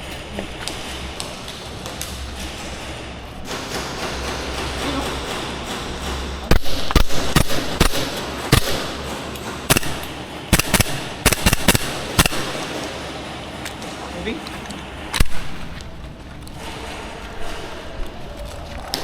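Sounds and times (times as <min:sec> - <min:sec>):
airsoft guns firing: 0:06.5 - 0:13.1.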